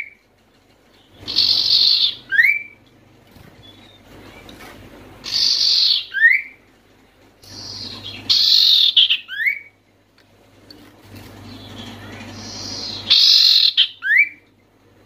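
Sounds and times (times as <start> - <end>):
bird calling buzzy notes and whistle: 1.2 - 2.8, 5.2 - 6.6, 7.5 - 9.8, 12.3 - 14.4.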